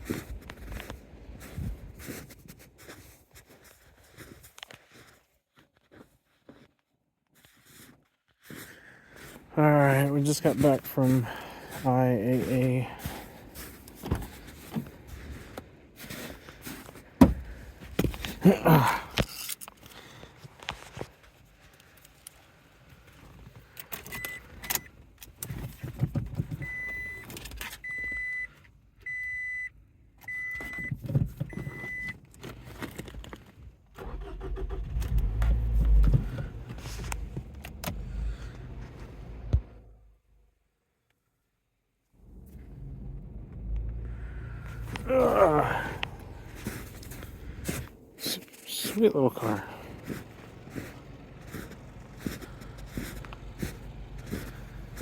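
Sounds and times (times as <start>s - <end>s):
car engine cranking and starting: 9.6s - 19.9s, 23.3s - 28.4s, 33.9s - 40.1s, 42.2s - 55.0s
keys jangling and clicking: 19.2s - 20.0s
car warning chime beeping: 24.1s - 24.9s, 26.6s - 32.2s.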